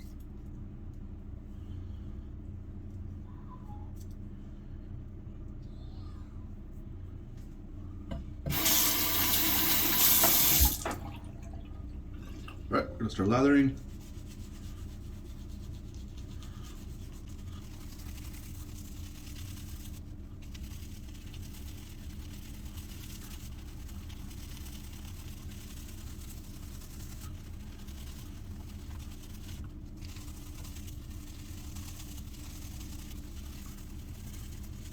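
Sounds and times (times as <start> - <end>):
steady low hum: 0.0 - 34.9
shaving brush swishing lather: 8.5 - 10.9, 13.0 - 34.9.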